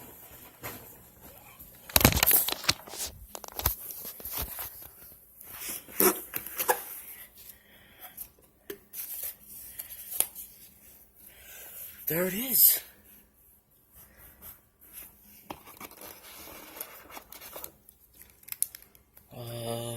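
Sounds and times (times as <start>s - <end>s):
packaging tearing and crinkling: 1.8s - 4.8s, 15.9s - 19.0s.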